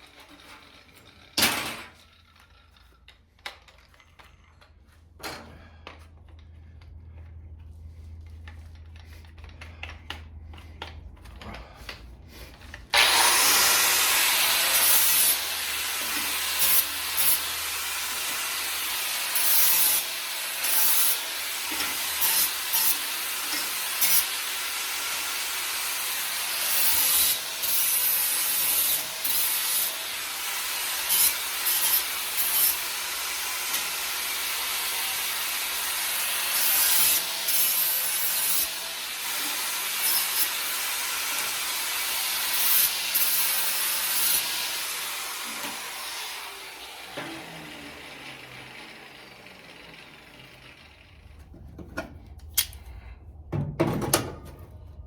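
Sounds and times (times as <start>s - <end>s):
power tool grinding sheet metal: 12.9s - 51.4s.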